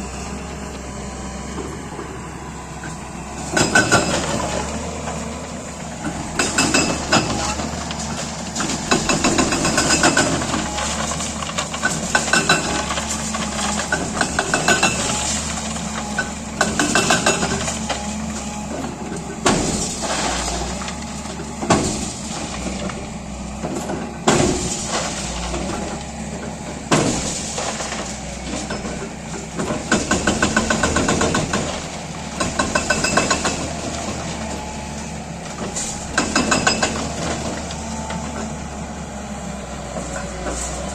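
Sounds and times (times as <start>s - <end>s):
diesel engine running: 0.0s - 40.9s
hydraulic breaker hammering concrete: 3.4s - 5.0s, 6.0s - 23.0s, 26.7s - 34.7s, 35.5s - 38.8s.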